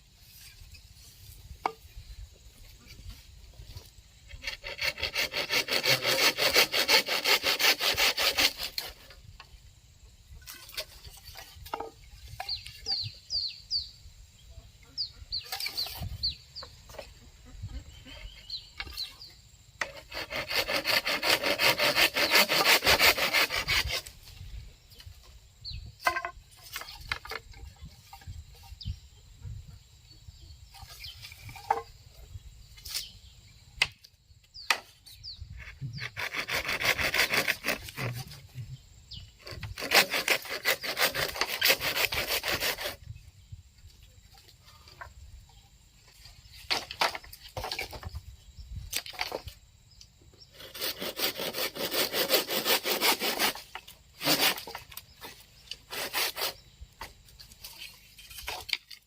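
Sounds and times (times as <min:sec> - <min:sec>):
hand saw cutting wood: 0:04.3 - 0:09.2, 0:19.8 - 0:24.2, 0:35.6 - 0:38.4, 0:39.4 - 0:43.0, 0:50.5 - 0:56.6.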